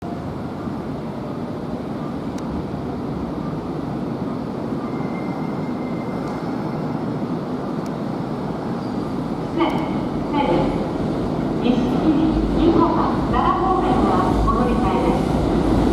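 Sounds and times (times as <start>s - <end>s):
electric train rumbling: 0.0s - 15.9s.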